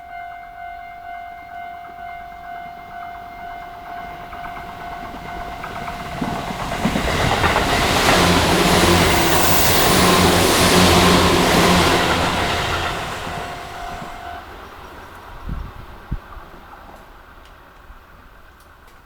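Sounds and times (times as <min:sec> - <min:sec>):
level crossing warning bell: 0:00.0 - 0:14.6
train passing on rails: 0:00.0 - 0:19.0.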